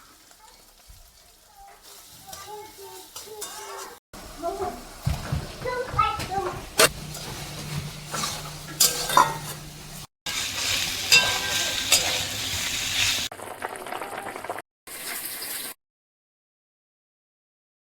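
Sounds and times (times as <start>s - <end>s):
food sizzling in a pan: 0.0s - 15.8s
spatula scraping a pan: 0.8s - 4.0s, 6.7s - 13.3s.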